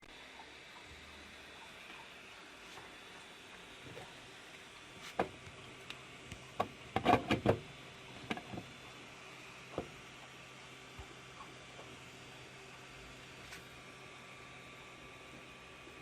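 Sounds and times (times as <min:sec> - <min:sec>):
faint steady hum: 0:00.0 - 0:16.0
sharp clicks and knocks: 0:05.1 - 0:07.6.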